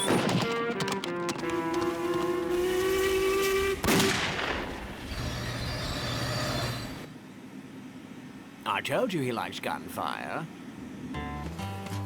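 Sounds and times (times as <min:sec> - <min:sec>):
steam train whistle: 0:01.4 - 0:03.9
gunshot: 0:03.8 - 0:04.9.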